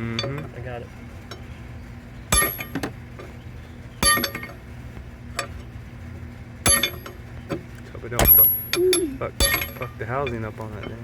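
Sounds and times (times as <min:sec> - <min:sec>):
hammer striking steel: 0:02.3 - 0:02.9, 0:04.0 - 0:04.6, 0:06.7 - 0:07.2, 0:08.2 - 0:10.4
light metal clinks: 0:04.0 - 0:04.6.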